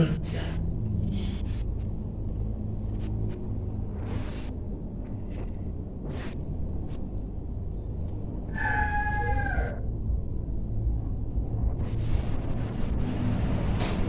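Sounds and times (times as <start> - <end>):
steady low rumble: 0.0 - 8.6, 9.7 - 14.0
rooster crowing: 8.5 - 9.9.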